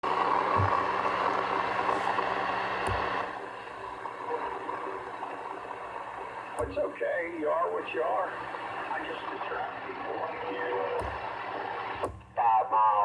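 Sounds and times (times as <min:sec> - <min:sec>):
radio static hiss: 0:00.1 - 0:13.0.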